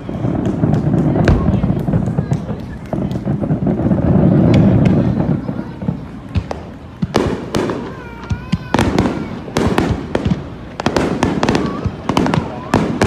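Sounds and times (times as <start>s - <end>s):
fireworks bangs with echo: 0.0s - 13.0s.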